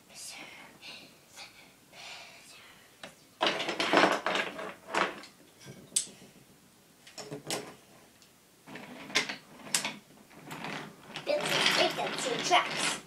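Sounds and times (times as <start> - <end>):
toy train pieces knocking and rattling: 3.4 - 5.3, 8.7 - 13.0.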